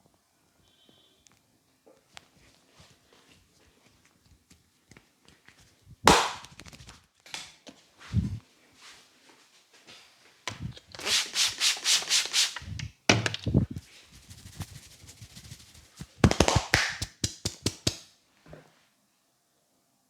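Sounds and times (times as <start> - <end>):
hands rubbing and striking hair: 3.8 - 7.0, 10.5 - 18.1.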